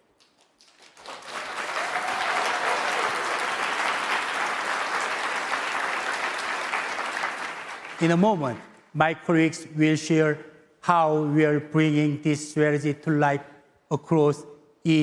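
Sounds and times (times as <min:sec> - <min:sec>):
audience applauding: 0:00.4 - 0:08.6.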